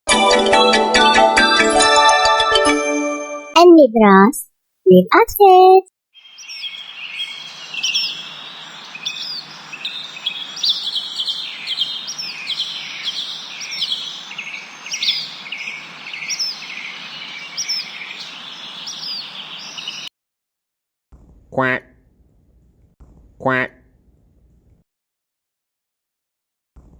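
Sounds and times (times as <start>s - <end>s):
songbirds chirping and singing: 6.2s - 20.1s
background hiss: 6.3s - 20.1s.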